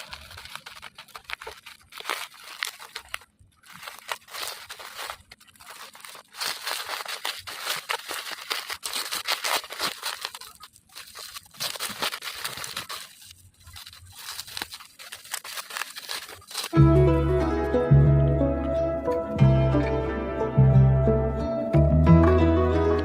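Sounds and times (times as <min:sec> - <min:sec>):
packaging crinkling and tearing: 0:00.0 - 0:16.8.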